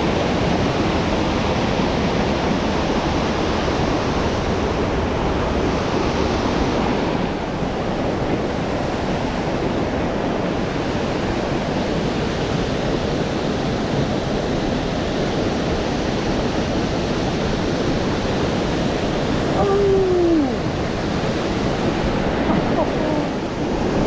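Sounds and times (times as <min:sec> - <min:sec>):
fast-flowing stream rushing: 0:00.0 - 0:24.0.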